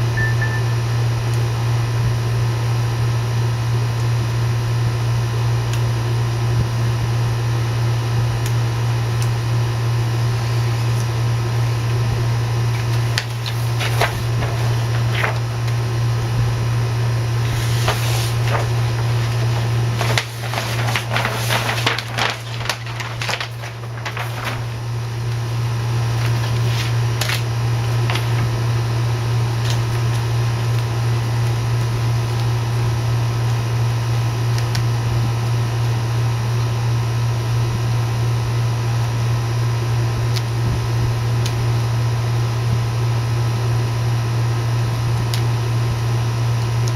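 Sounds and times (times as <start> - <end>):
steady low hum: 6.0 - 33.1
rustling and clicking handling noise: 12.7 - 15.9, 17.4 - 25.4, 26.0 - 28.6.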